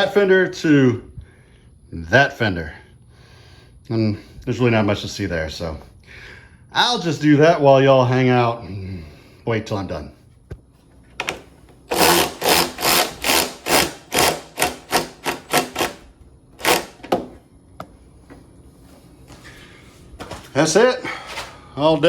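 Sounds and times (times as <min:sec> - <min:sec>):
short rasping hand-tool strokes: 0:11.9 - 0:16.0, 0:16.6 - 0:17.2.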